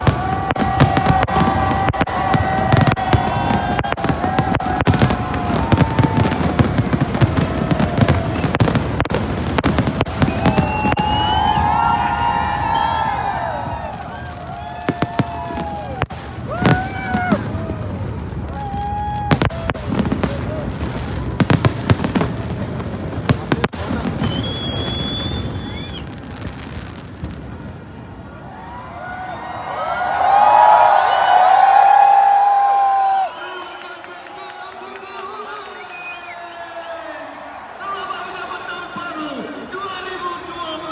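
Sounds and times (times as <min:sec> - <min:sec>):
fireworks bangs and crackles: 0:00.0 - 0:29.7
background noise: 0:00.0 - 0:40.9.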